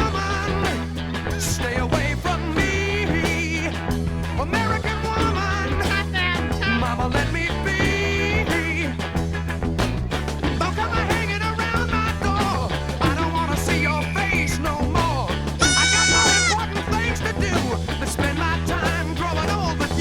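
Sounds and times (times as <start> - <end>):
upbeat music with singing: 0.0 - 20.0.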